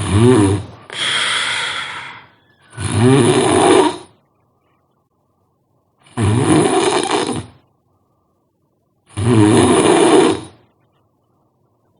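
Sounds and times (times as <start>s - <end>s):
person snoring loudly: 0.0s - 4.1s, 6.1s - 7.6s, 9.1s - 10.6s.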